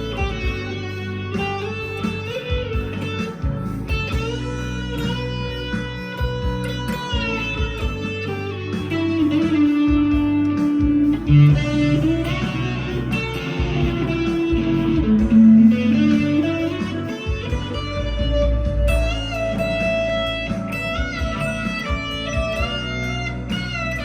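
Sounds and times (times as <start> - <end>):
overdriven electric guitar lead: 0.0 - 24.0.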